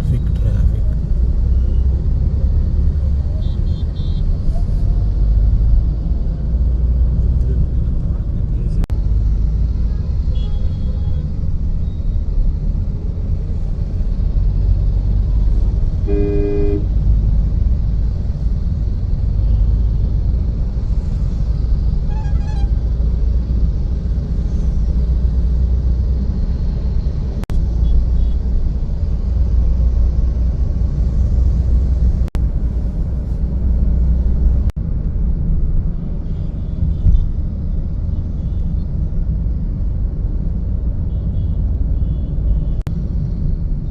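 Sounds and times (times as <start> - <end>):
road traffic rumble: 0.0 - 43.9
vehicle horn honking: 16.1 - 16.9.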